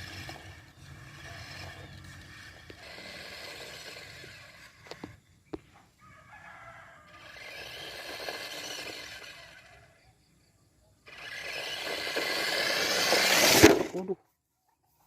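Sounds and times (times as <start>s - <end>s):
rooster crowing: 6.0s - 7.6s.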